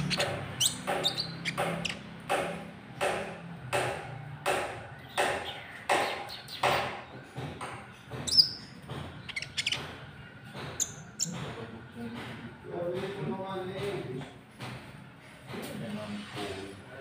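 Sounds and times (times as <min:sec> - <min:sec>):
bird harsh repeated call: 0:00.0 - 0:02.2.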